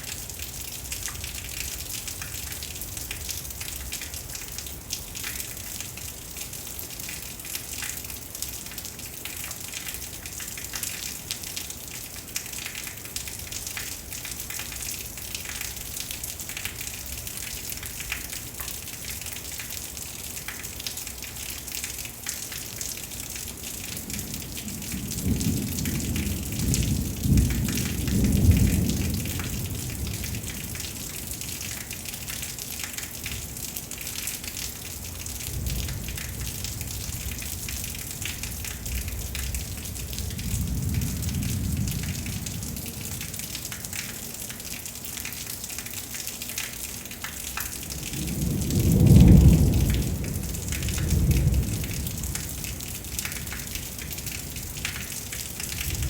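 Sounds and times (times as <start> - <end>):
steady rain hissing: 0.0 - 56.0
low thunder rumbles: 24.0 - 31.7, 35.2 - 43.7, 47.8 - 56.0.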